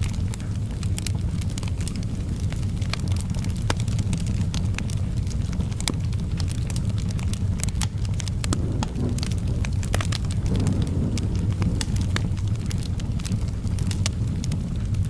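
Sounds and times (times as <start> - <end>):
wood fire crackling: 0.0 - 15.0
low rumble: 7.0 - 15.0.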